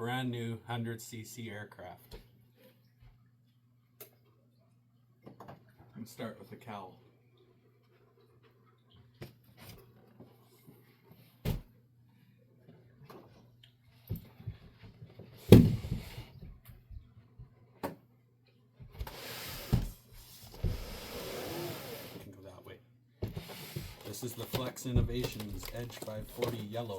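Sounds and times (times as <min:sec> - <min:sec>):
cardboard and packing clicks and knocks: 0:23.2 - 0:26.9
rustling packaging: 0:23.8 - 0:26.9.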